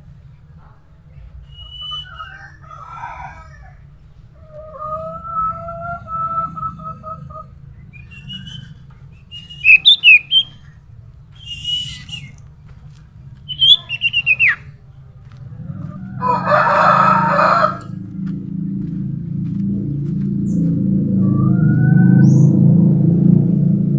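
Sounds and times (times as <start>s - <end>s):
low steady hum: 0.0s - 23.9s
bird chirping and whistling: 1.5s - 2.4s, 8.0s - 10.6s, 11.4s - 12.3s, 13.5s - 14.6s, 21.3s - 22.5s.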